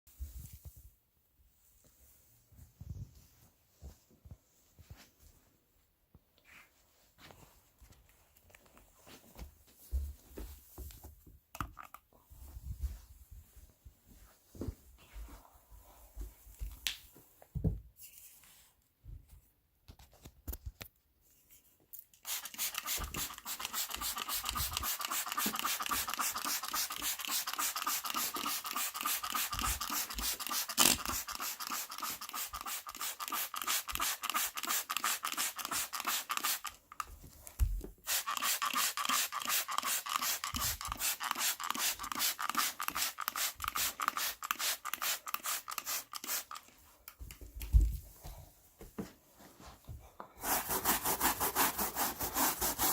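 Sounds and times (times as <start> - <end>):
brush scrubbing carpet: 22.3 - 36.6, 50.4 - 52.9.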